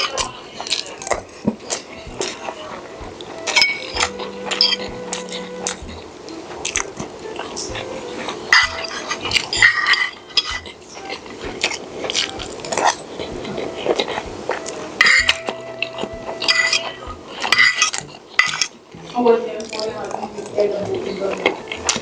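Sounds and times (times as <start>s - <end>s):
cutlery scraping against plate: 3.4s - 19.9s.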